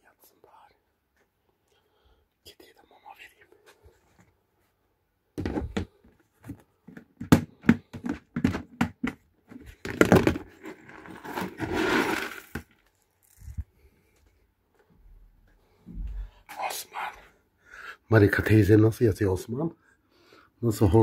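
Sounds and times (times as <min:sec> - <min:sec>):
rustling rush of cat food: 0:10.6 - 0:13.5.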